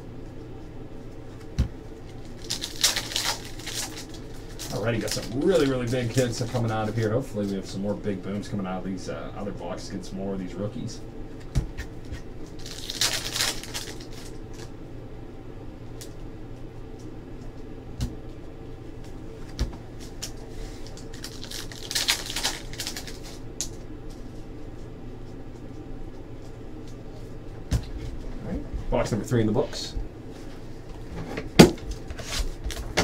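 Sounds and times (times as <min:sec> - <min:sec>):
steady low hum: 0:00.0 - 0:33.0
crisp rustling of card packs: 0:02.0 - 0:07.8, 0:12.4 - 0:14.7, 0:20.0 - 0:23.4.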